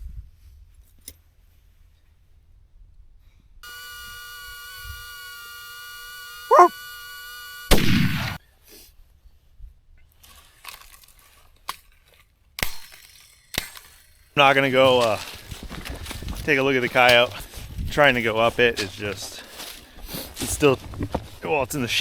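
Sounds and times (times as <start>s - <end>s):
wavering tone: 3.6s - 7.8s
loud yelp: 6.5s - 6.8s
rifle shot: 7.7s - 8.4s.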